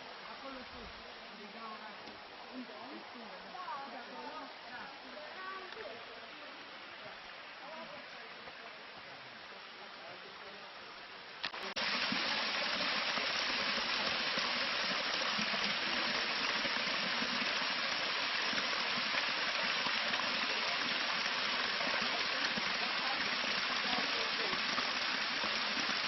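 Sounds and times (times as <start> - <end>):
waterfall rushing: 11.4 - 26.0.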